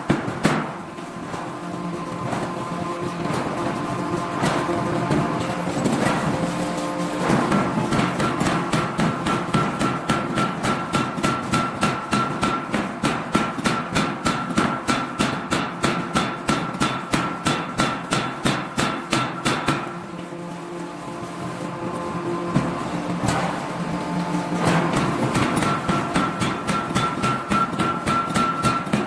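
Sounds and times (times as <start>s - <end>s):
forging hammer striking metal: 7.2s - 20.0s, 24.6s - 29.0s.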